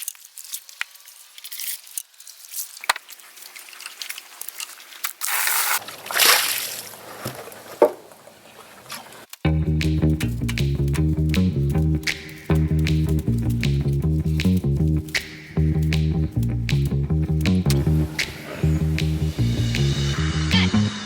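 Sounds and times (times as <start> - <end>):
water sloshing in a trough: 5.7 - 9.3
music: 9.4 - 21.0.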